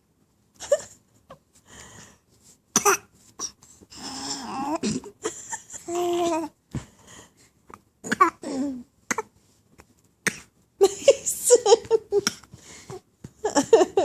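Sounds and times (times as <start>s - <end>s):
baby babbling: 4.1s - 4.8s, 5.9s - 6.5s.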